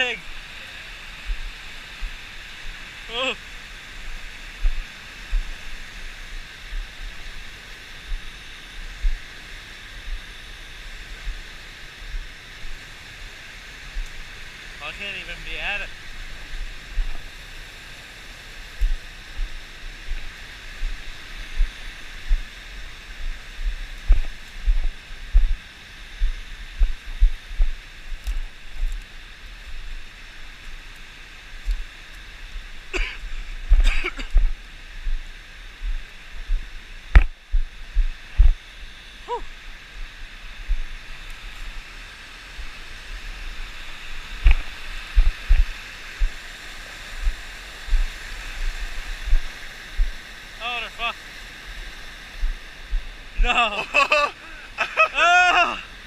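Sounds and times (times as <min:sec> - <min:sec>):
microphone knocking thumps: 0:23.6 - 0:25.6, 0:26.2 - 0:29.0, 0:35.8 - 0:38.6, 0:44.4 - 0:46.4, 0:47.2 - 0:50.2
waterfall rushing: 0:43.7 - 0:51.2.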